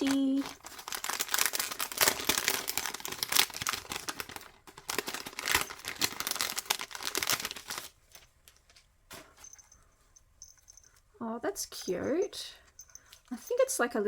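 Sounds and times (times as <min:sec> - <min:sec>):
paper packaging crinkling: 0:00.0 - 0:09.6.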